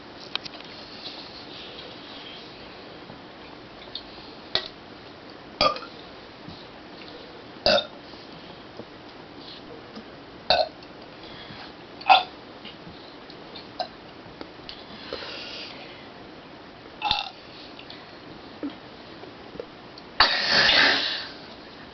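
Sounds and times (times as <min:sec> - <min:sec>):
person burping: 0:05.6 - 0:05.9, 0:07.6 - 0:07.9, 0:10.5 - 0:10.8.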